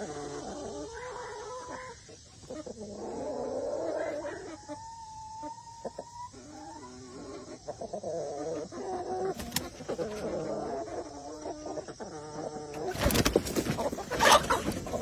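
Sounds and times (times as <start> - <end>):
chickens clucking: 0.0 - 15.0
loud rustling scuffling: 12.8 - 15.0.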